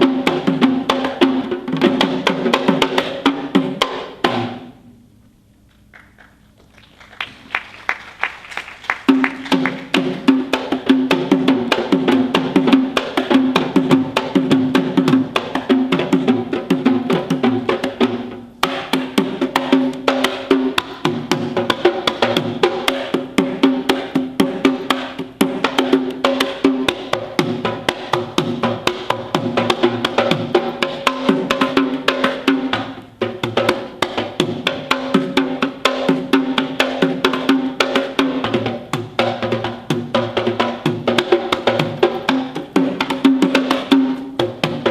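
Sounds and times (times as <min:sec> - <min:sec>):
drums in fast rhythm: 0:00.0 - 0:04.7, 0:07.1 - 0:44.9.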